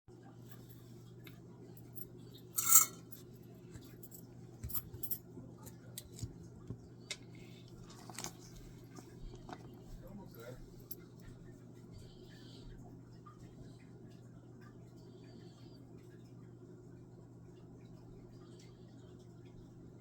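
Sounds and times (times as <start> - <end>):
steady low hum: 0.2 - 20.0
small metal tools clinking: 1.8 - 3.2
metal clatter: 2.6 - 3.0.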